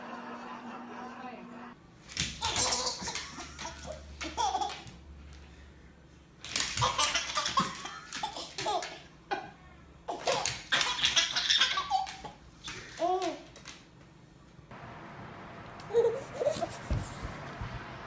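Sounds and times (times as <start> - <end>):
baby laughing: 2.4 - 5.0, 6.8 - 9.5, 10.1 - 13.4, 15.9 - 16.9.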